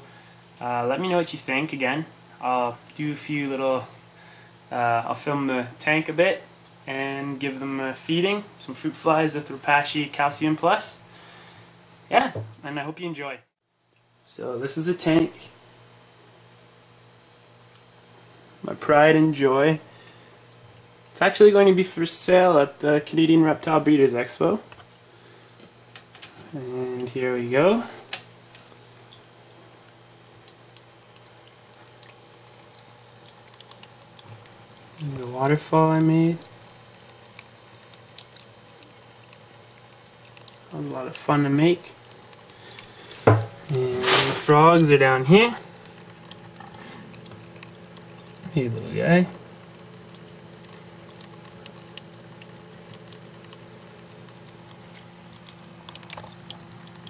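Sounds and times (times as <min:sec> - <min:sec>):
small waterfall trickling: 0:27.6 - 0:43.8, 0:44.5 - 0:57.0
water drips and splashes: 0:28.2 - 0:57.0.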